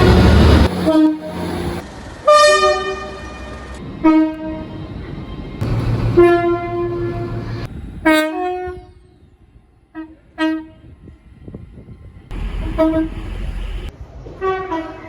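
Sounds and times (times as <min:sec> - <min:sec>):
train horn blasts: 0:00.0 - 0:05.0, 0:05.6 - 0:09.0, 0:09.9 - 0:11.0, 0:12.3 - 0:15.0
low rumble: 0:05.6 - 0:08.1, 0:12.3 - 0:13.9.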